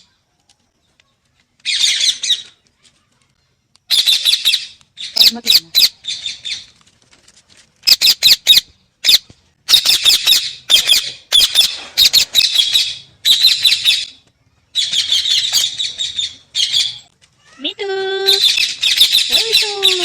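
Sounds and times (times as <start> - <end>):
parrots chirping shrilly: 1.6 - 2.5, 3.9 - 6.8, 7.8 - 17.1, 18.2 - 20.0.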